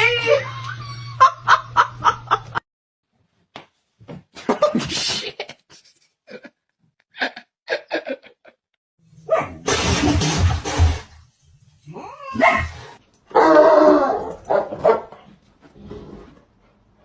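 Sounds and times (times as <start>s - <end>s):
person laughing: 4.4s - 8.6s.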